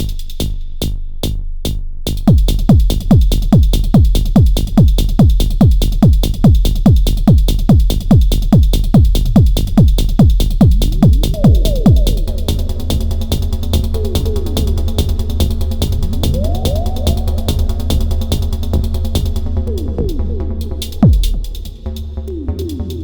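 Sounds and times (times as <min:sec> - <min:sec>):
techno beat of low hits: 0:00.0 - 0:23.0
gliding synth chord: 0:10.7 - 0:21.0.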